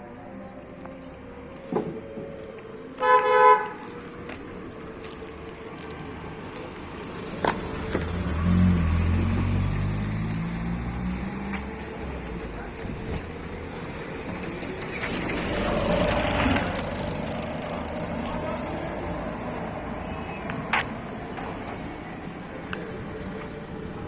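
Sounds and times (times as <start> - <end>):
vehicle horn honk: 3.0 - 3.9
vehicle engine passing: 5.8 - 24.0.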